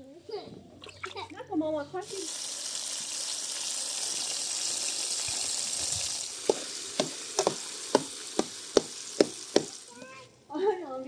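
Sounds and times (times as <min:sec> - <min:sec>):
sizzling hiss: 0:02.0 - 0:10.2
sharp knocks: 0:06.5 - 0:09.7.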